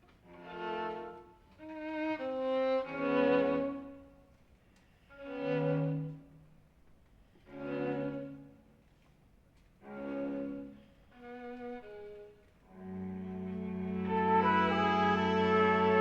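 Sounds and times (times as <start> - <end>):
string quartet sustained chords: 0.2 - 4.0, 5.2 - 6.3, 7.5 - 8.6, 9.8 - 10.8, 12.7 - 16.0.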